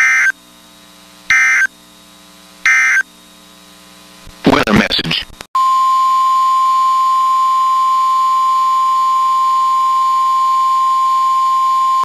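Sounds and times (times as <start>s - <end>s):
steady loud alarm tone: 1.3s - 1.7s, 2.7s - 3.0s, 5.6s - 12.0s.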